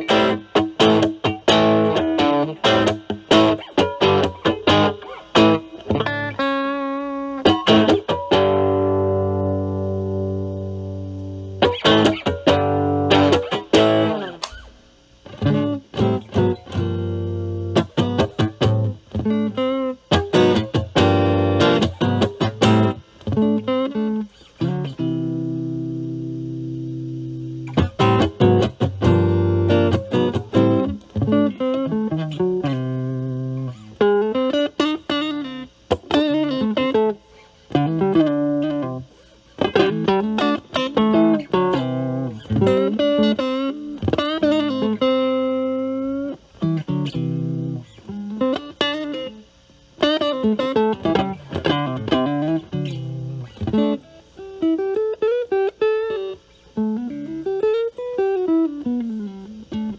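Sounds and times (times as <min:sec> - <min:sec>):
distorted electric guitar: 0:00.0 - 0:59.9.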